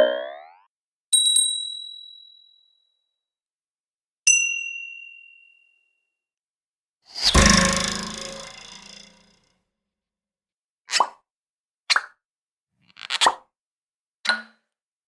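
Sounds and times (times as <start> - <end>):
bright ding: 7.3 - 9.2.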